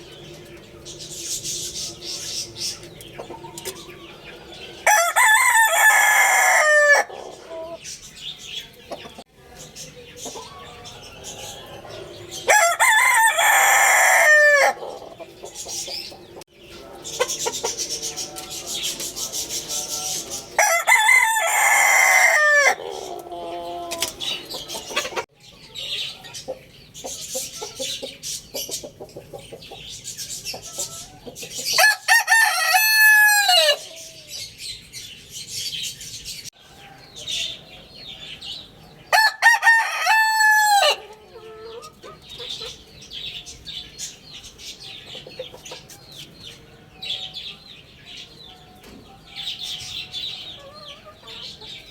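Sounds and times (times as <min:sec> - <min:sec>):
roosters crowing: 0:00.0 - 0:08.4, 0:10.3 - 0:26.1, 0:30.6 - 0:34.5, 0:36.6 - 0:42.3
chickens clucking and chirping: 0:00.0 - 0:51.9.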